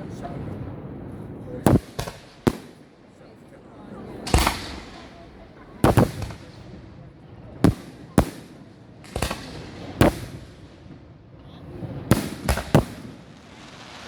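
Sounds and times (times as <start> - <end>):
fireworks bangs: 0.0 - 3.4, 4.0 - 14.0.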